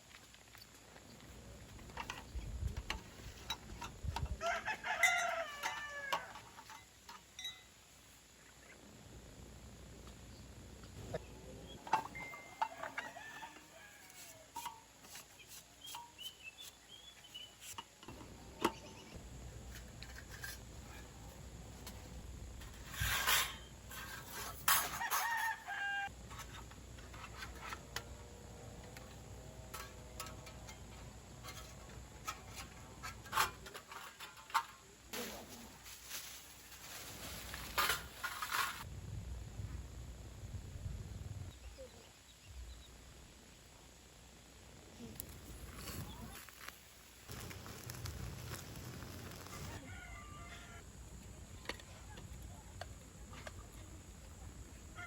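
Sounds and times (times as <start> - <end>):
rooster crowing: 4.4 - 6.5, 12.3 - 14.5, 24.9 - 26.1, 49.7 - 50.9
scratchy rustling: 45.4 - 49.8.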